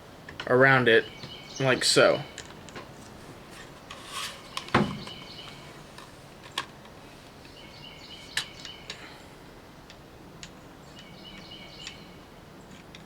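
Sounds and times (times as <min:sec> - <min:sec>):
faint bird chirps: 0:10.8 - 0:12.8.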